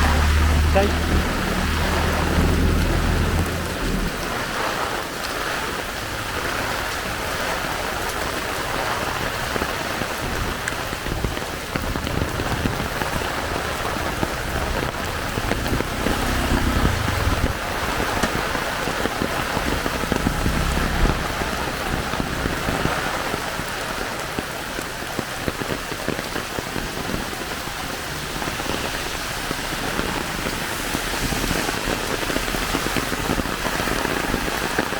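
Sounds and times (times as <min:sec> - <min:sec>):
low rumble: 0:00.0 - 0:04.7, 0:11.8 - 0:24.6
heavy rain pouring: 0:00.0 - 0:34.9.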